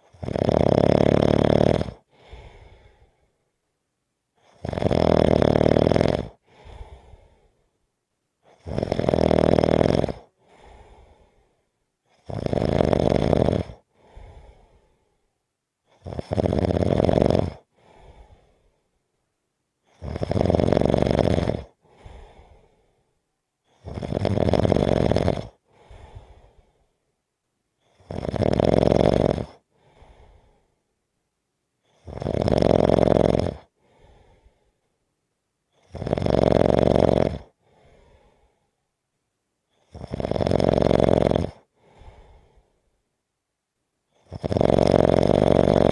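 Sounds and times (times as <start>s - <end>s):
loud snoring: 0.0s - 2.1s, 4.4s - 6.4s, 8.5s - 10.3s, 12.1s - 13.9s, 15.9s - 17.7s, 19.9s - 21.8s, 23.7s - 25.6s, 27.9s - 29.6s, 31.9s - 33.7s, 35.8s - 37.6s, 39.8s - 41.7s, 44.2s - 45.9s
soft breath out: 2.1s - 3.5s, 6.4s - 7.7s, 10.4s - 11.7s, 13.9s - 15.3s, 17.7s - 19.0s, 21.8s - 23.2s, 25.7s - 27.0s, 29.7s - 30.9s, 33.8s - 35.0s, 37.6s - 38.8s, 41.8s - 42.9s.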